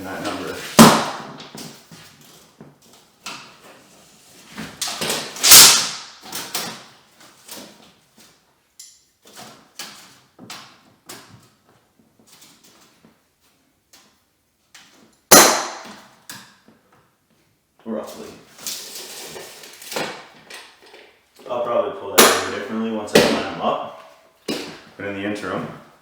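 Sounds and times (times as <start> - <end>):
loud bang: 5.4 - 6.2.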